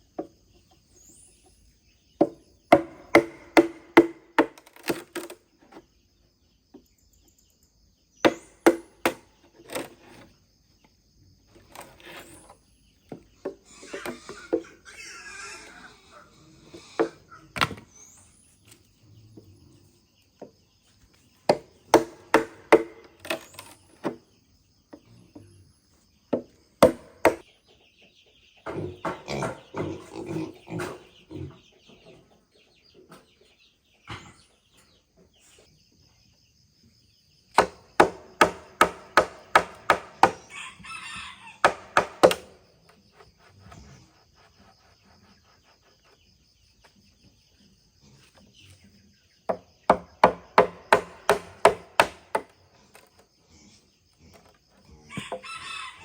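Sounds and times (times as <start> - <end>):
chopping strikes on bamboo: 2.2 - 5.3, 8.3 - 9.2, 21.5 - 24.2, 26.4 - 27.4, 37.6 - 40.4, 41.6 - 42.5, 49.5 - 52.5
chickens clucking: 13.1 - 18.0, 27.4 - 35.7, 40.4 - 41.7
high insect whine: 13.6 - 27.5, 35.6 - 56.0.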